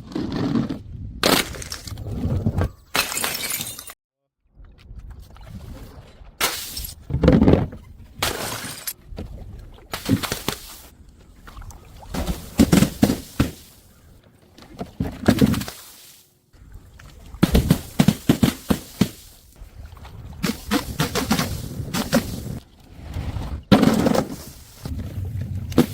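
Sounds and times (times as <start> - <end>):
objects crashing and smashing: 23.5 - 25.0, 25.6 - 25.9.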